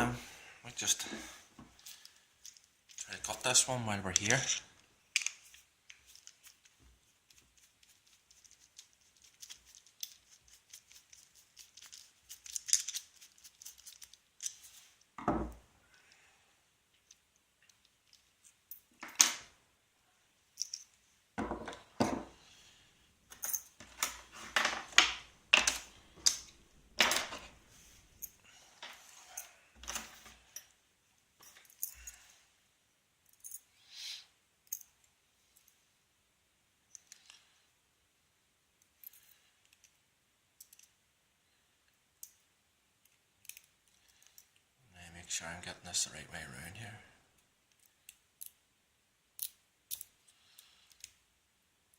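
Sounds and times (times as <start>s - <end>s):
padlock metal clicks and rattles: 7.8s - 14.6s, 40.6s - 41.0s, 43.0s - 44.6s, 49.4s - 50.1s.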